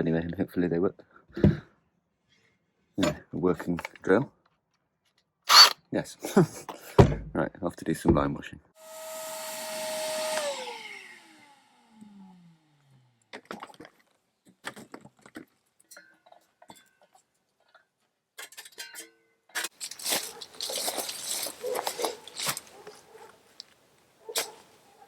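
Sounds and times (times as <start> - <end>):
electric motor whining down: 8.8 - 13.3
rustling clatter: 19.6 - 23.3.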